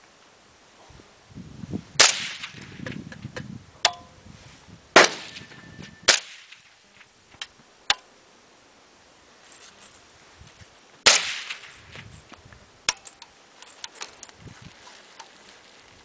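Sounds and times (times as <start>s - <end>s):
suppressed rifle shots: 2.0s - 2.8s, 5.0s - 6.7s, 11.0s - 11.8s.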